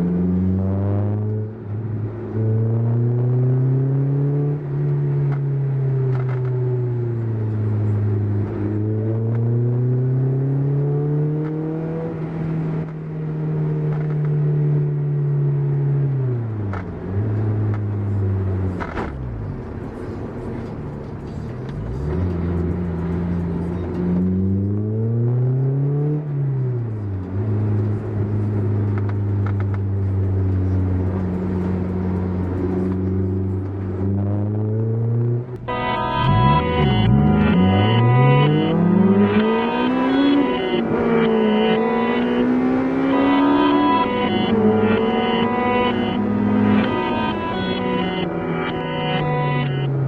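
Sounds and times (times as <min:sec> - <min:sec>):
car engine exhaust note: 0:26.6 - 0:50.0.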